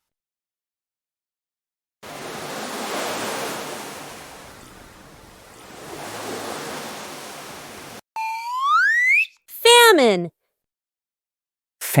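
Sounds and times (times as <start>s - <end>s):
sea waves washing onto shore: 2.0s - 8.0s.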